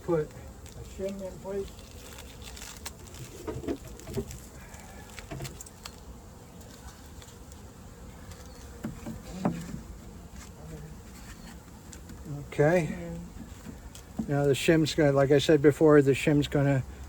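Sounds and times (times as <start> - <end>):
honeybees buzzing: 0.0 - 17.0
knocks of hive parts handled: 2.9 - 5.9, 8.2 - 12.3, 13.1 - 14.4.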